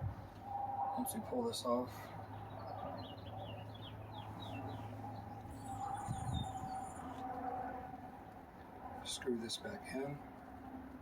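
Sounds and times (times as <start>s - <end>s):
bird chirping: 0.4s - 7.3s.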